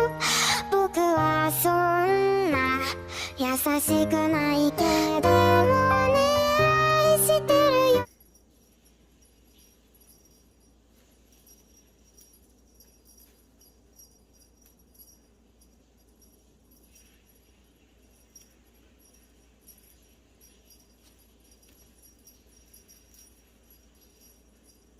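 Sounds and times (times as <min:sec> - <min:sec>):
small bell jingling: 0:02.6 - 0:24.9.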